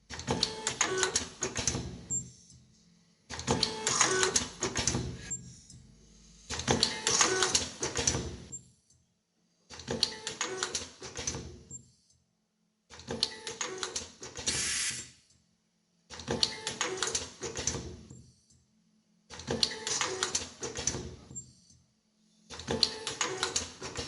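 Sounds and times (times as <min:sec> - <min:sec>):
machine clicking and clattering: 0:03.3 - 0:05.3, 0:06.5 - 0:08.5, 0:16.1 - 0:18.2, 0:19.3 - 0:21.4, 0:22.5 - 0:24.0
brief hiss: 0:14.5 - 0:15.1.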